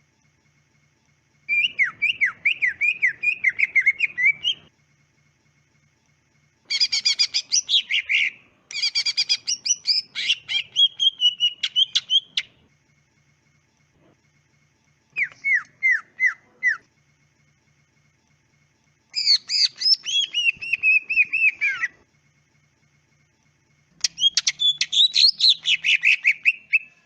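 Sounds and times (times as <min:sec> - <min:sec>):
bird song with whistles and trills: 0:01.5 - 0:04.7, 0:06.7 - 0:12.6, 0:15.1 - 0:16.9, 0:19.1 - 0:22.0, 0:24.0 - 0:27.0.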